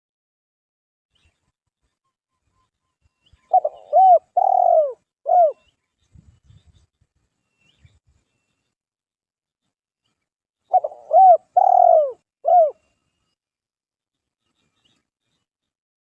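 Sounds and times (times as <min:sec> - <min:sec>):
dove cooing: 0:03.5 - 0:05.6, 0:10.7 - 0:12.8.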